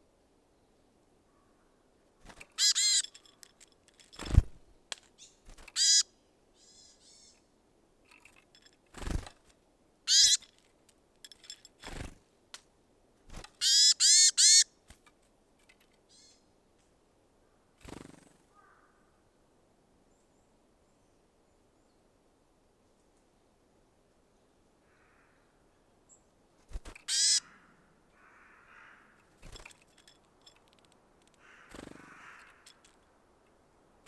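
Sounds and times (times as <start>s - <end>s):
songbirds buzzy calls: 2.2s - 4.4s, 5.2s - 7.4s, 10.1s - 10.6s, 13.5s - 14.9s, 26.7s - 33.0s.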